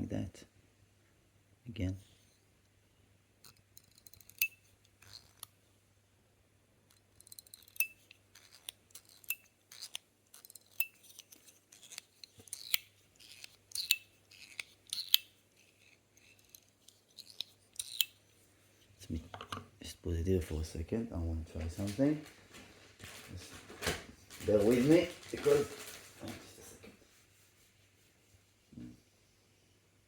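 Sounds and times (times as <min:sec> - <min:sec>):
metal fidget toy clicking: 0:03.5 - 0:05.5, 0:06.9 - 0:18.2.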